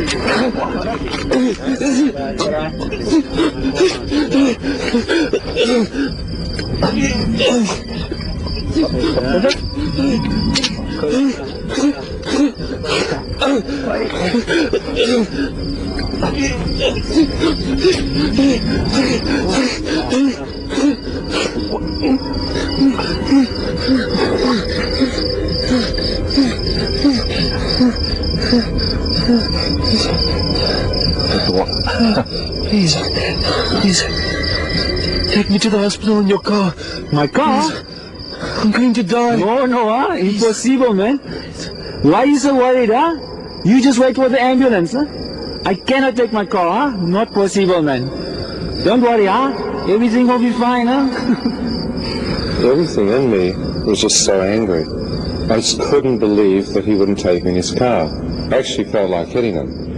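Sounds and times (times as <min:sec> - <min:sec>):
crickets chirping: 0:00.0 - 0:59.9
person coughing: 0:00.1 - 0:06.1, 0:08.8 - 0:15.5, 0:16.2 - 0:24.6
man talking: 0:35.3 - 0:37.8, 0:52.6 - 0:59.8.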